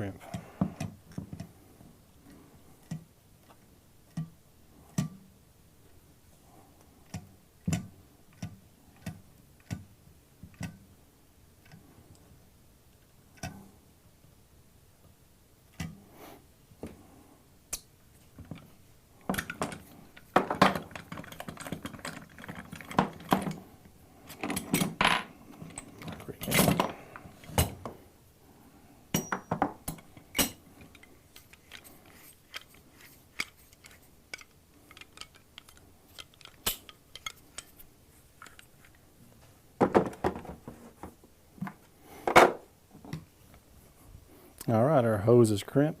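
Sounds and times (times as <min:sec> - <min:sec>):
metal parts clinking: 0:19.4 - 0:23.6, 0:29.2 - 0:37.8.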